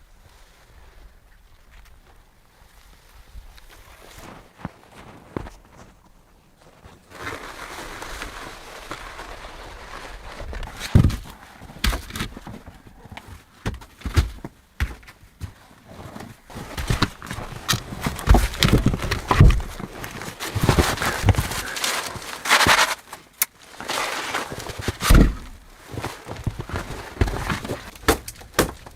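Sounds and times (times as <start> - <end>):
heavy thuds and knocks: 16.5 - 23.0, 24.8 - 28.9.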